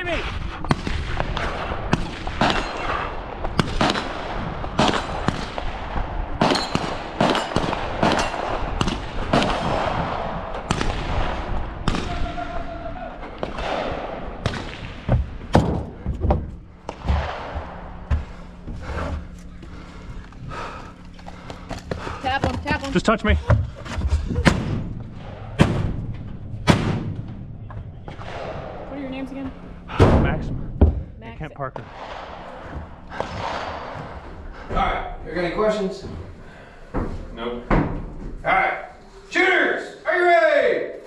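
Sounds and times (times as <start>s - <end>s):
gunshots: 0.6s - 12.7s, 13.3s - 15.9s, 16.8s - 18.0s, 24.4s - 28.9s, 31.8s - 34.2s.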